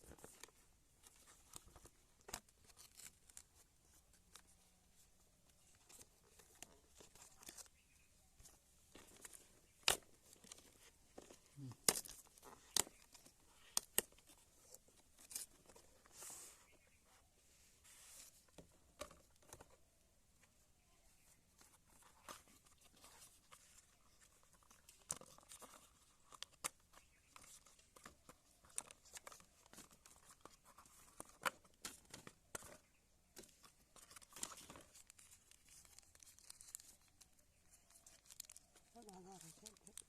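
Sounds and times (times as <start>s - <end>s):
packaging rustling: 33.4s - 40.0s.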